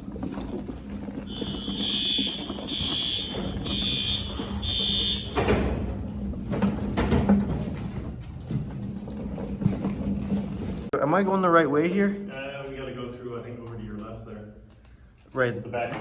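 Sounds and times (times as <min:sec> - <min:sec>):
fire alarm horn blasts: 0:01.3 - 0:05.9.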